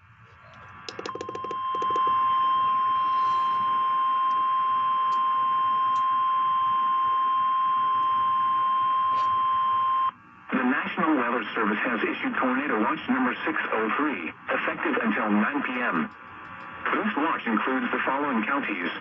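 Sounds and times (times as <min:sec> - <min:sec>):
rapid clicks: 0:00.9 - 0:02.2
steady alarm beep: 0:01.0 - 0:10.1.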